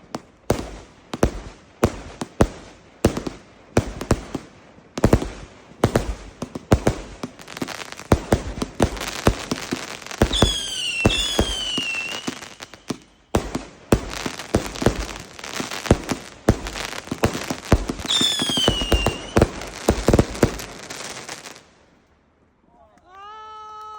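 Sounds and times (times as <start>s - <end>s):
fireworks cracks and bangs: 0.0s - 21.7s
whistling firework shells: 5.0s - 21.6s.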